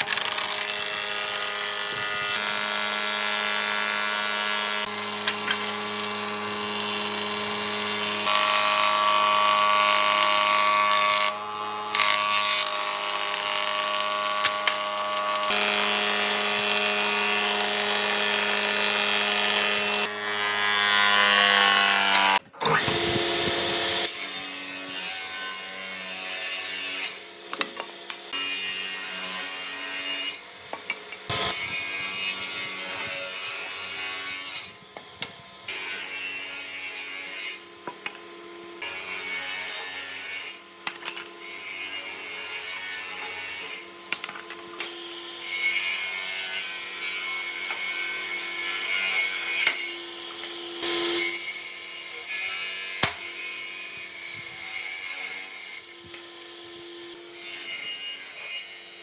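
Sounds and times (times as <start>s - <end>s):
power tool motor running: 0.0s - 20.6s, 21.3s - 24.4s.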